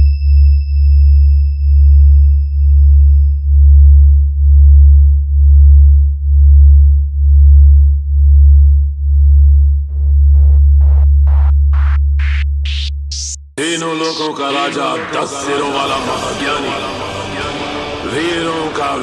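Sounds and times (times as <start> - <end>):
pulsing sub-bass tone: 0.0 - 14.2.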